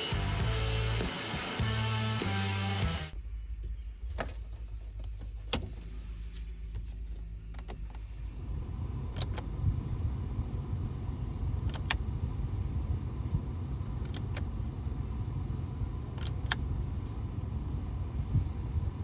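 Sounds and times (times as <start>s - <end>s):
sharp clicks: 13.9s - 14.6s, 16.1s - 16.8s.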